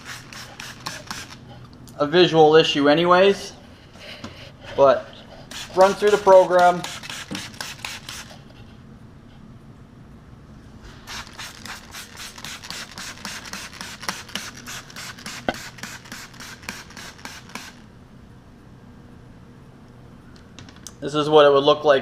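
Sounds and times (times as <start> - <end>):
rapid scratchy brush strokes: 0.0 - 1.4, 5.4 - 8.4, 10.9 - 17.8.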